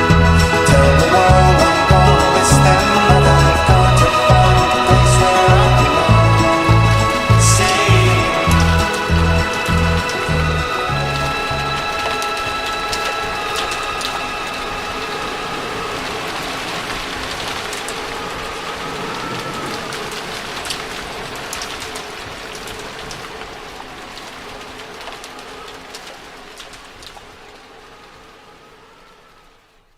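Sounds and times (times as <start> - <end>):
held musical chord: 0.0 - 16.0
rain falling: 0.0 - 29.9.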